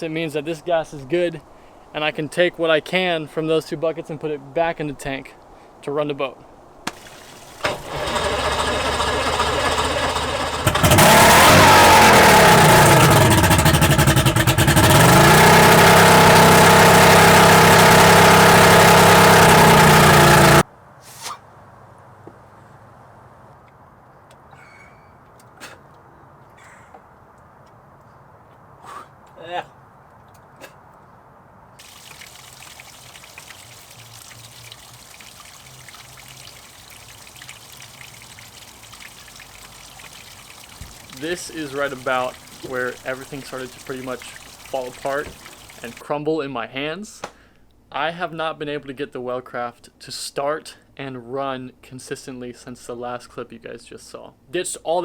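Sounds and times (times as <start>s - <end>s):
outboard motor idling: 6.9s - 20.6s, 38.0s - 46.0s
water splashing: 6.9s - 20.6s, 31.8s - 46.0s.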